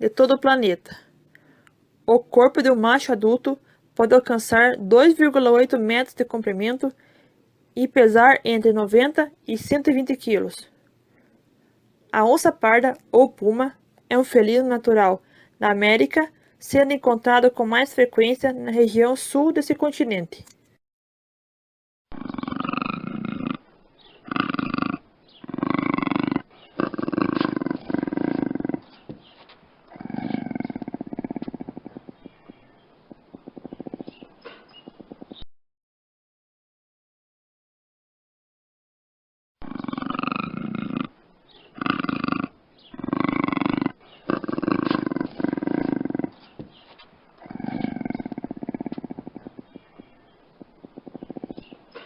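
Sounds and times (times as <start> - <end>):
puma low calls: 22.1 - 29.2, 29.9 - 35.4, 39.6 - 46.6, 47.3 - 52.0.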